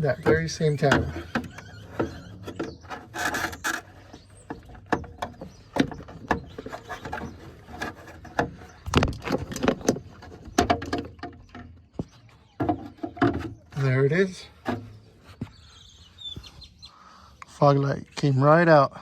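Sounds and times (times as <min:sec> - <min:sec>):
screwdriver scraping plastic: 0:00.2 - 0:04.4.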